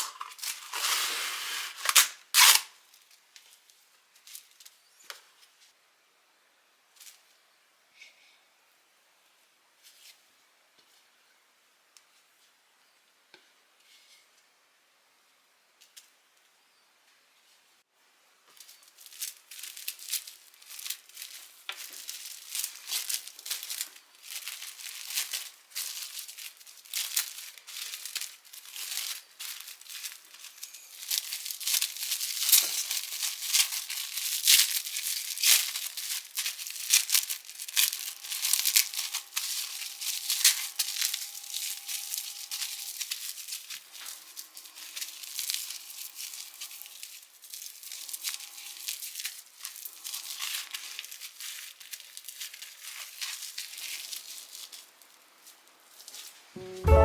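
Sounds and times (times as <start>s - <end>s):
wrapping crinkling and rustling: 0.0s - 5.8s, 18.4s - 56.7s.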